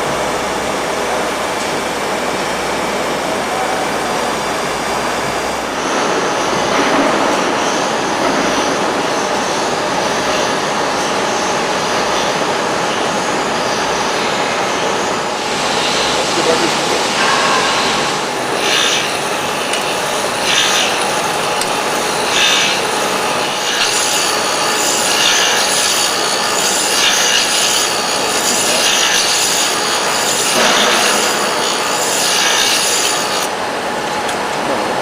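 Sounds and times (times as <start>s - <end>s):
grinding wheel hiss: 10.3s - 33.5s.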